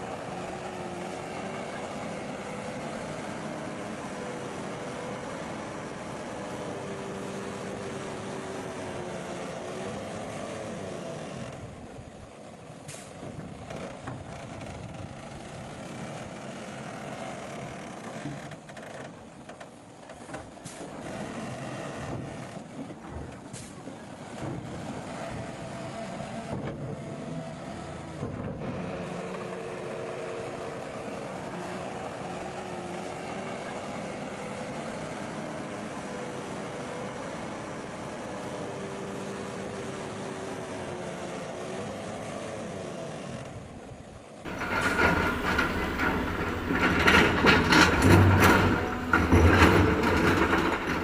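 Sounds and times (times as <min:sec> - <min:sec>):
diesel engine drone: 0:00.0 - 0:19.0, 0:20.6 - 0:51.0
sharp metallic clanks: 0:44.5 - 0:51.0.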